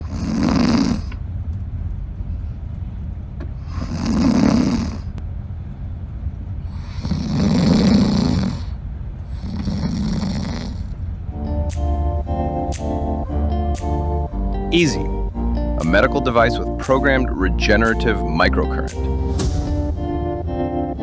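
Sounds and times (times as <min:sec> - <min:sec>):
person snoring: 0:00.0 - 0:01.2, 0:03.7 - 0:05.1, 0:06.8 - 0:10.9
steady low hum: 0:00.0 - 0:21.0.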